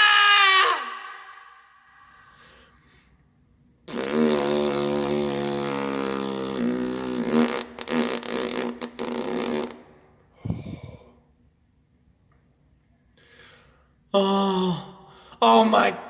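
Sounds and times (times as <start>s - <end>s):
long fart noise: 3.9s - 11.0s.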